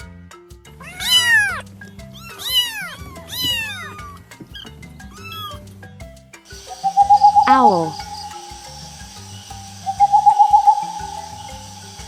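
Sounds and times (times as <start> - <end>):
background music: 0.0 - 12.0.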